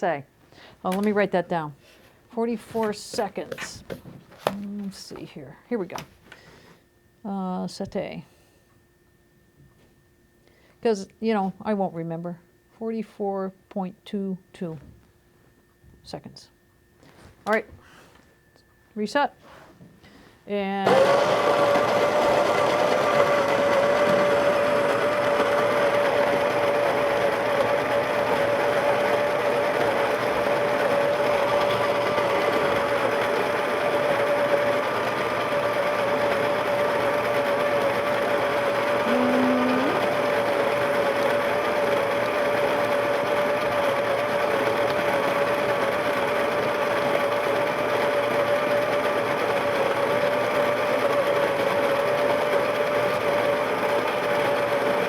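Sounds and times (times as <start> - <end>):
coffee grinder running: 20.8 - 55.0.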